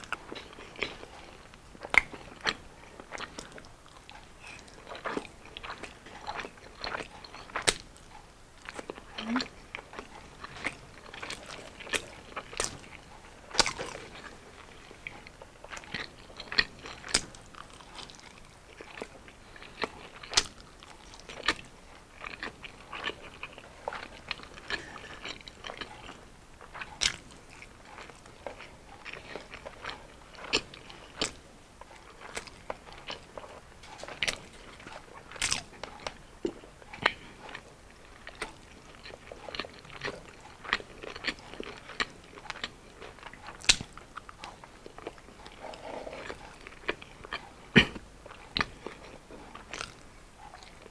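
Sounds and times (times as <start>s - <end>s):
crunchy food chewing: 0.0s - 50.9s
mouth sounds: 9.1s - 9.5s.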